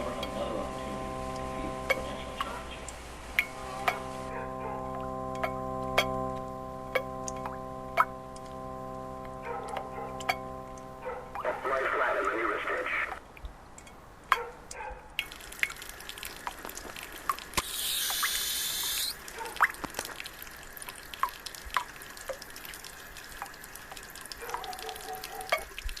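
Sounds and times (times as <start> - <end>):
water dripping: 0.0 - 12.4, 13.1 - 26.0
loud hiss: 17.6 - 19.2.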